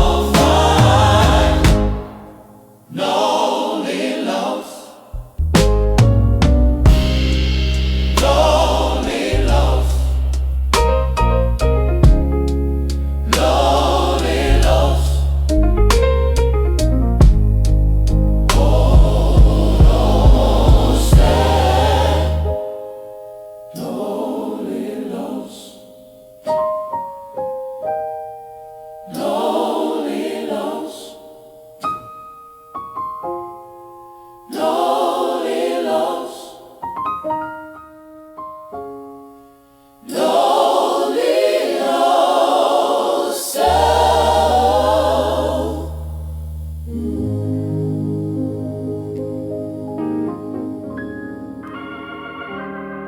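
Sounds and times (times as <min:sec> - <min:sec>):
deep bass: 0:00.0 - 0:02.1, 0:05.2 - 0:22.6, 0:45.7 - 0:48.6
gospel choir singing: 0:00.0 - 0:05.4, 0:06.9 - 0:11.2, 0:13.2 - 0:15.5, 0:18.1 - 0:23.0, 0:23.7 - 0:26.1, 0:29.0 - 0:31.6, 0:34.4 - 0:37.0, 0:40.0 - 0:53.0
piano notes: 0:05.5 - 0:08.9, 0:46.9 - 0:53.0.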